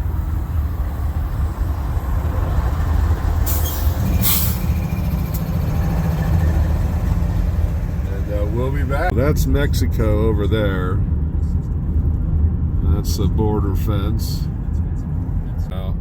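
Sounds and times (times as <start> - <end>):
diesel locomotive engine rumble: 0.0 - 16.0
air hisses: 3.4 - 5.4.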